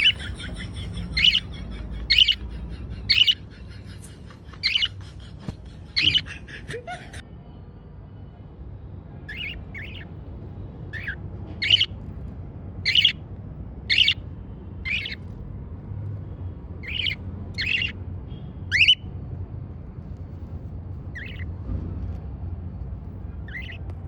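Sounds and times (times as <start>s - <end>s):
cockatiel squawking: 0.0s - 6.5s, 9.3s - 10.1s, 10.9s - 12.0s, 12.8s - 13.2s, 13.9s - 14.2s, 14.8s - 15.2s, 16.8s - 18.0s, 18.7s - 19.1s, 21.1s - 21.5s, 23.4s - 23.9s.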